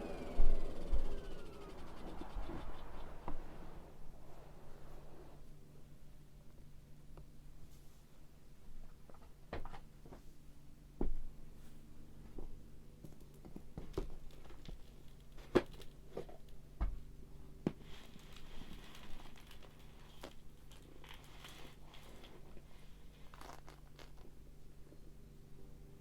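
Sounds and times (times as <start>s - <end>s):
faint steady hum: 0.0s - 26.0s
crinkling: 17.7s - 24.4s.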